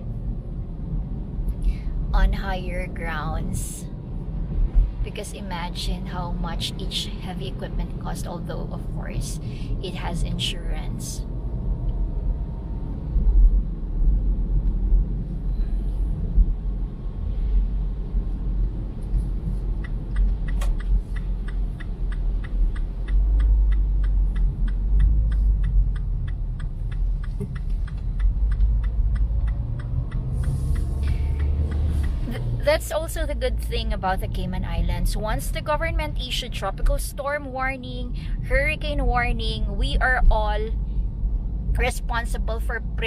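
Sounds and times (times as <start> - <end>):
road and engine rumble: 0.0 - 43.0
light ticks: 18.9 - 32.3.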